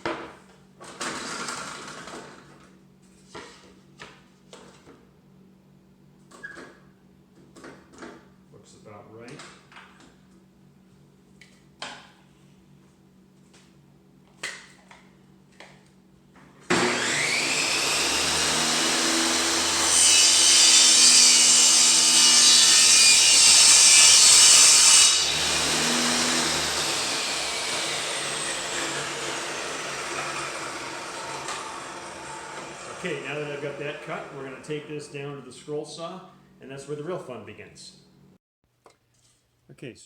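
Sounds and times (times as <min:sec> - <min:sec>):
table saw motor whining: 0:16.7 - 0:35.2
saw blade cutting wood: 0:16.7 - 0:35.3.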